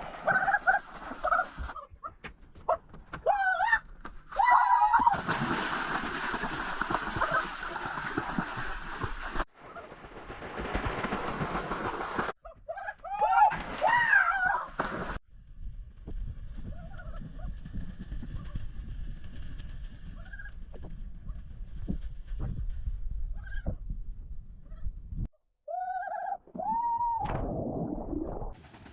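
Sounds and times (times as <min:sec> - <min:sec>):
water splashing and sloshing: 0:00.0 - 0:01.8, 0:04.0 - 0:12.4, 0:13.5 - 0:15.2.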